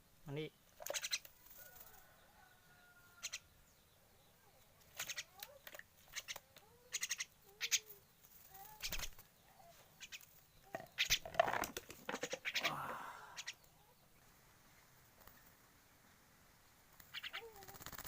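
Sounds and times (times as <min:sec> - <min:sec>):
bird wings flapping: 0:11.0 - 0:12.5, 0:16.9 - 0:18.0.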